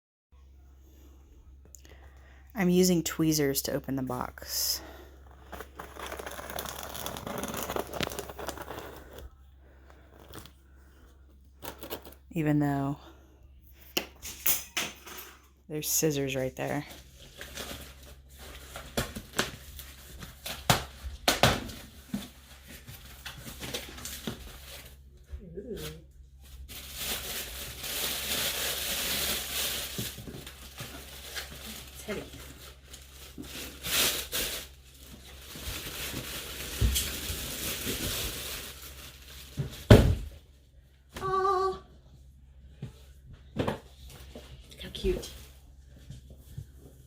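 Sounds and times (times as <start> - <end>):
packaging rustling: 4.4 - 10.7, 11.6 - 12.3.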